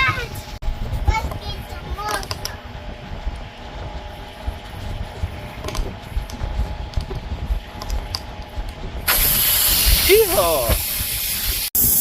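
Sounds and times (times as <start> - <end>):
air hissing out of tire: 9.0 - 12.0.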